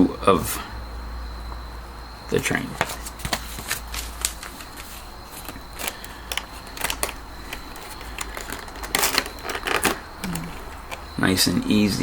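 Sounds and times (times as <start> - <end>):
paper pamphlet crackling: 2.4 - 12.0
plastic blister pack clicking: 5.4 - 11.8.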